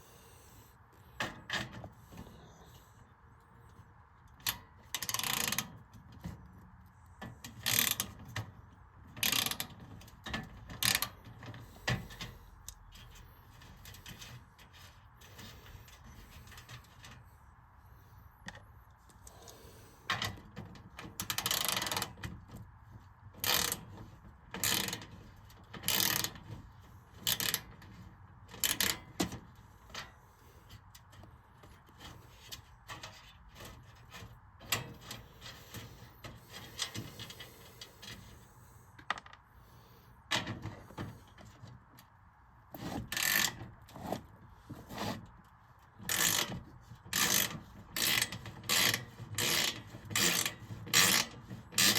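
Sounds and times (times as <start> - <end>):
ratchet wrench clicking: 4.4 - 5.6, 7.6 - 8.0, 9.2 - 9.7, 21.3 - 22.0, 23.4 - 23.8, 25.9 - 26.3, 28.6 - 29.0, 46.1 - 46.5, 47.1 - 51.9.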